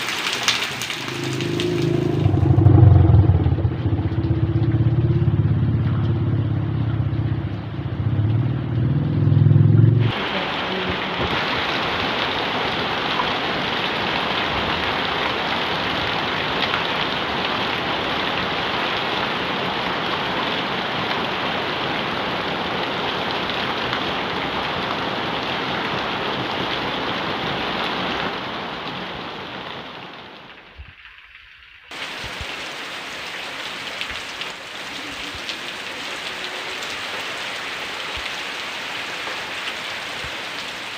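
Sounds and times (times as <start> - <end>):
heavy rain falling: 0.0 - 40.9
low engine rumble: 0.8 - 11.4.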